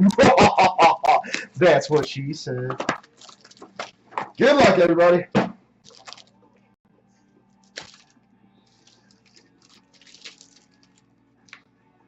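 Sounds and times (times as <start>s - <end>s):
wrapper crinkling and rustling: 3.0s - 4.1s, 5.8s - 6.4s, 7.6s - 11.6s
card pack sharp crack: 7.6s - 8.1s.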